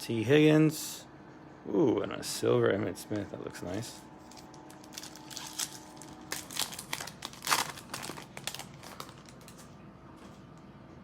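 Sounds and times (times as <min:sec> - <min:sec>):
wrapper tearing and crinkling: 0:04.2 - 0:09.7.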